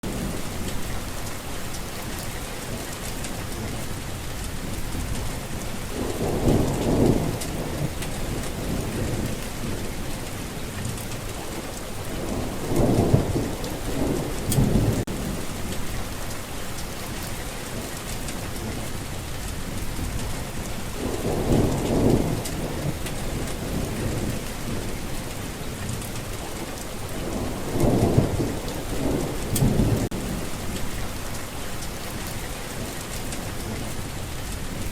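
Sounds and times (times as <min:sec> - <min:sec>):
rain falling: 0:00.0 - 0:34.9
thunder rumbling: 0:00.0 - 0:34.9.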